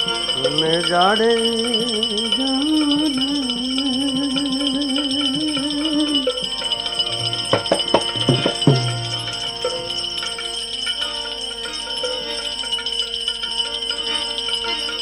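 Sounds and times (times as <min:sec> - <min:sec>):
held wavering note: 0:00.0 - 0:10.7
jingling percussion: 0:00.0 - 0:15.0
hand drum strokes: 0:07.1 - 0:10.0.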